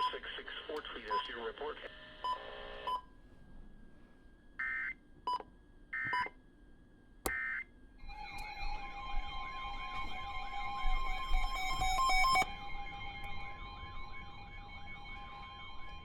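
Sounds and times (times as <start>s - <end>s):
siren-like rising sweep: 8.0s - 16.0s.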